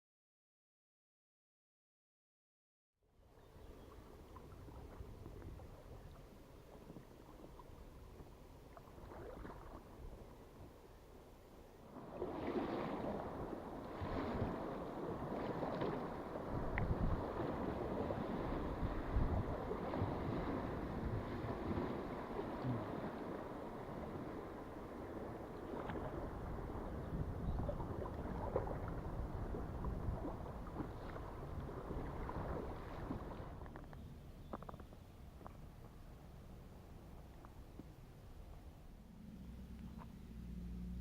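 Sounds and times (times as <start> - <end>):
water splashing from paddle strokes: 3.8 - 10.4, 11.8 - 33.9
wind buffeting microphone: 12.3 - 34.8.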